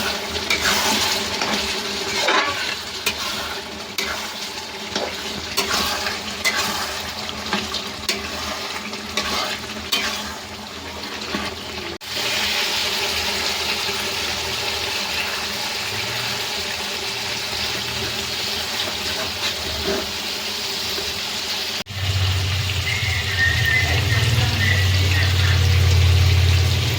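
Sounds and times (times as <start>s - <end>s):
spoon stirring and scraping: 0.0s - 11.6s, 17.7s - 20.4s
chicken frying in a pan: 0.0s - 26.9s.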